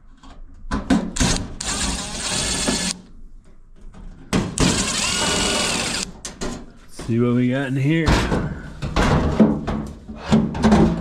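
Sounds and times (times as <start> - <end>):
power driver whirring: 1.2 - 3.0, 4.6 - 6.2.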